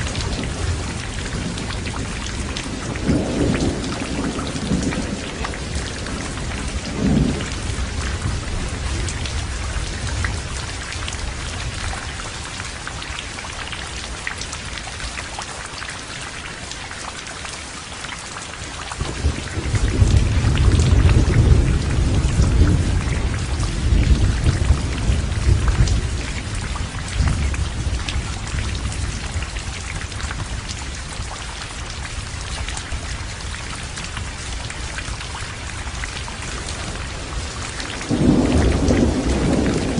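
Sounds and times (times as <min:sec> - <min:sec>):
heavy rain: 0:00.0 - 0:39.9
thunder rumbling: 0:19.0 - 0:30.6, 0:36.3 - 0:39.9.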